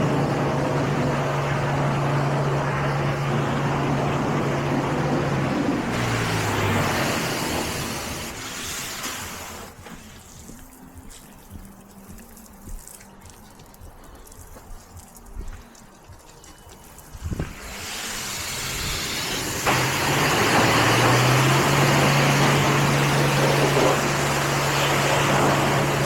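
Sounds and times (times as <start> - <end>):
loud rush with machine hum: 0.0 - 10.5, 17.2 - 26.0
car wash machinery rumble: 0.0 - 26.0
water spray: 0.0 - 26.0.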